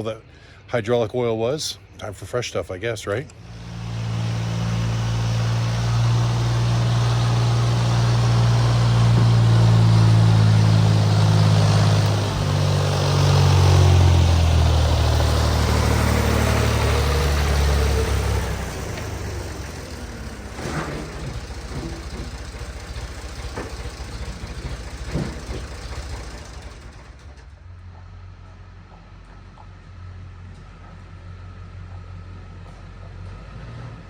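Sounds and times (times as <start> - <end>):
tractor engine running: 3.2 - 33.4.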